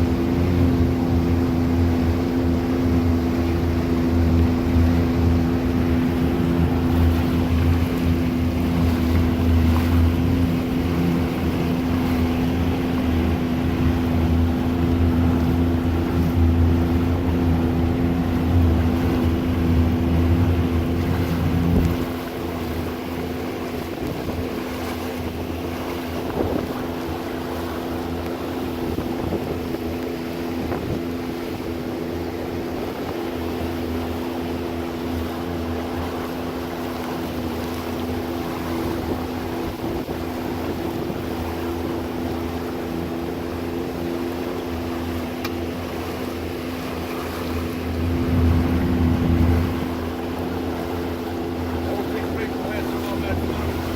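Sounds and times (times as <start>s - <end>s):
engine running steadily: 0.0s - 53.9s
wind on microphone: 26.2s - 27.0s.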